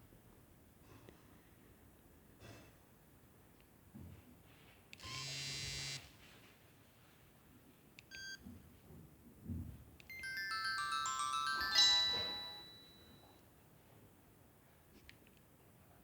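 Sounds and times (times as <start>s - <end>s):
mobile phone ringtone: 10.1s - 13.2s.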